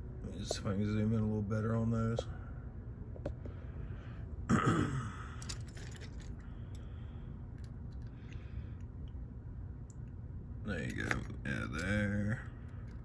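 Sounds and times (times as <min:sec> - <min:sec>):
man sighing: 0:04.5 - 0:05.6.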